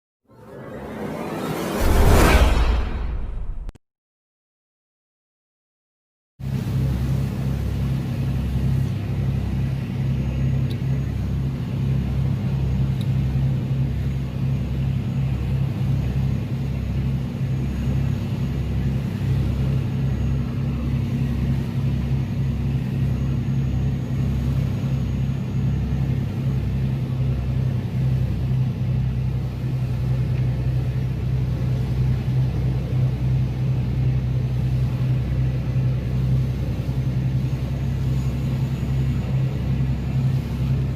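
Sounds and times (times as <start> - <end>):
uneven low flutter: 0.3 - 3.8
constant hum: 6.4 - 40.9
low mechanical rumble: 6.5 - 40.9.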